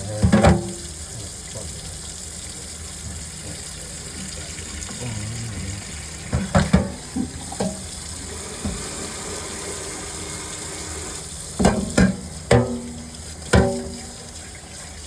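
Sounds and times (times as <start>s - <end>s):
tap running into sink: 0.1s - 1.8s, 6.2s - 14.4s
dishes and pans clattering: 0.2s - 0.8s, 6.3s - 7.9s, 11.6s - 14.0s.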